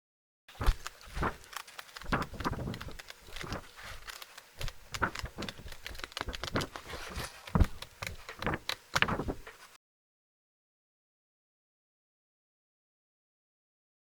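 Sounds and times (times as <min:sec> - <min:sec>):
paper crumpling: 0:00.5 - 0:09.8.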